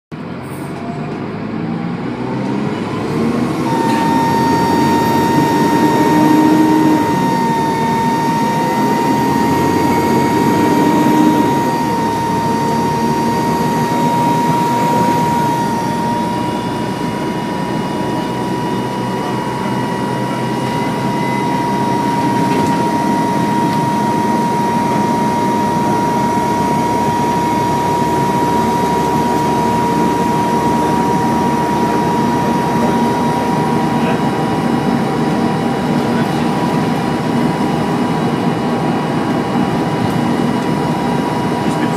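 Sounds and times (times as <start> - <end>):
bus diesel engine running: 0.1 - 41.9
high turbo whine: 0.1 - 41.9.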